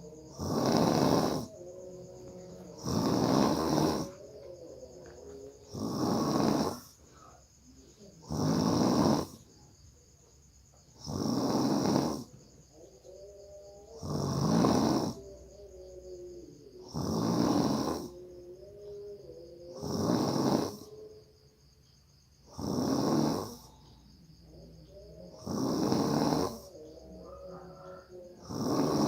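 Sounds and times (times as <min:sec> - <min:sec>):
person snoring heavily: 0:00.0 - 0:04.9, 0:05.7 - 0:07.4, 0:08.0 - 0:09.5, 0:11.0 - 0:12.4, 0:13.2 - 0:15.4, 0:16.7 - 0:18.2, 0:19.7 - 0:21.0, 0:22.5 - 0:23.8, 0:25.3 - 0:29.0
quiet breathing: 0:00.0 - 0:29.0.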